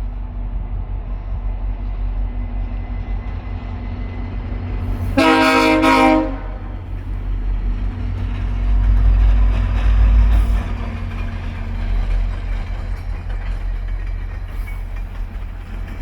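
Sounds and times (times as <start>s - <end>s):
locomotive horn blast: 5.2s - 6.8s.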